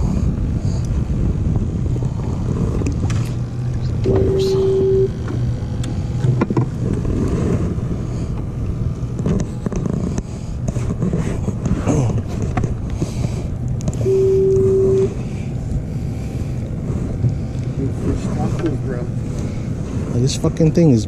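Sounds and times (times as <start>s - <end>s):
wind on microphone: 0.0s - 20.4s
boat engine rumble: 0.0s - 21.0s
steady beep: 4.0s - 5.2s, 14.0s - 15.2s.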